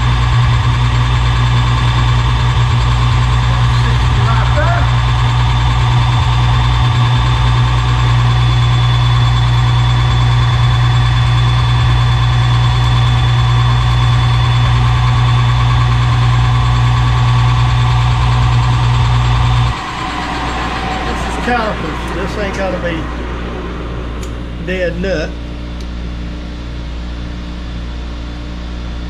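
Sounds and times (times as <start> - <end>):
metal lathe humming: 0.0 - 26.7
faint high whine: 17.8 - 29.0.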